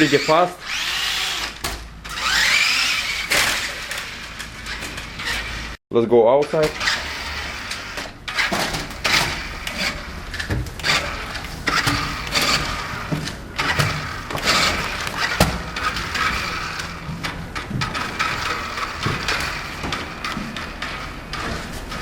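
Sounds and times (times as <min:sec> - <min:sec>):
footsteps: 0:10.4 - 0:22.0.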